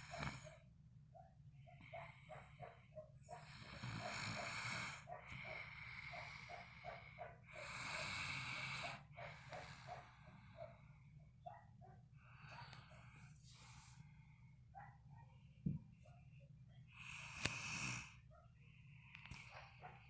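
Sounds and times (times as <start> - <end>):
soft breathing: 1.7 - 20.0
person snoring: 3.4 - 6.8, 17.0 - 18.2.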